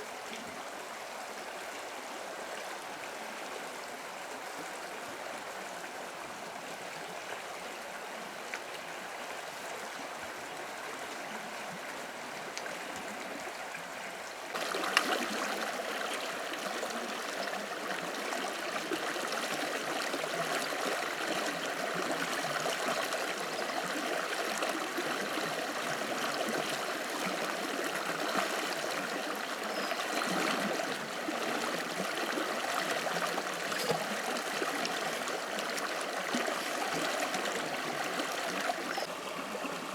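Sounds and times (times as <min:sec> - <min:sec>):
running water: 0:00.0 - 0:39.9.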